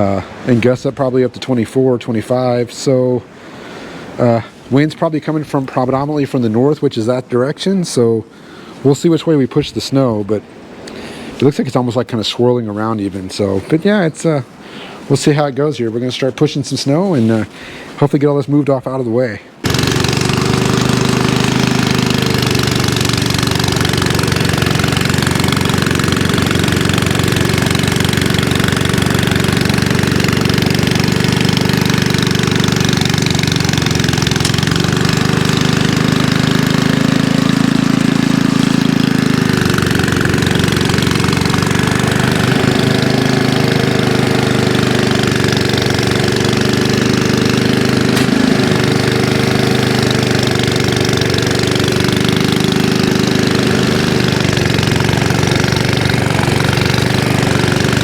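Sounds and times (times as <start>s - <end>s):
snow thrower engine running: 19.6s - 58.0s.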